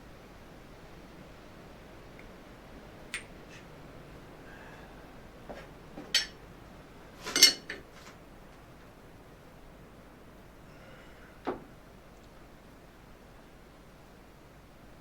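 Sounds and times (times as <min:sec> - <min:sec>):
small hard parts clinking: 0:06.0 - 0:06.4, 0:07.2 - 0:07.9.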